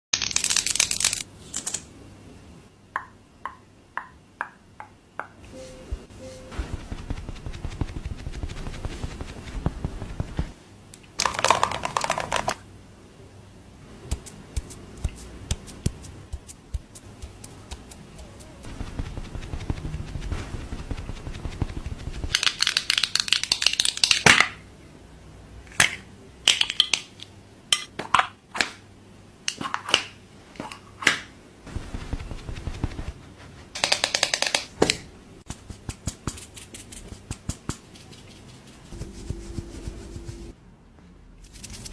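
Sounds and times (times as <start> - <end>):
rustling of makeup products: 11.2 - 12.6.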